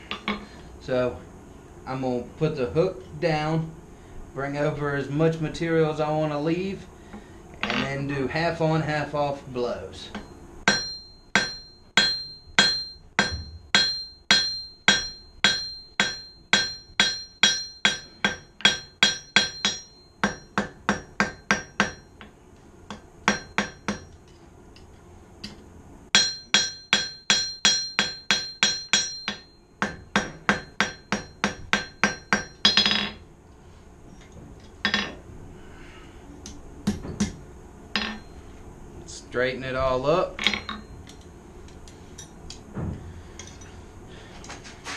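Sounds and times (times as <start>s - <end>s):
hammer striking steel on anvil: 0.0s - 0.5s, 10.1s - 22.3s, 22.9s - 24.3s, 25.4s - 33.2s, 34.8s - 35.2s, 36.9s - 38.4s, 40.4s - 41.2s.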